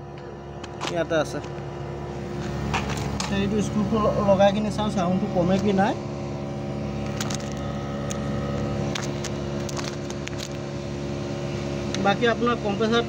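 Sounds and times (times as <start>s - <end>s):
air conditioner unit humming: 0.0s - 13.0s.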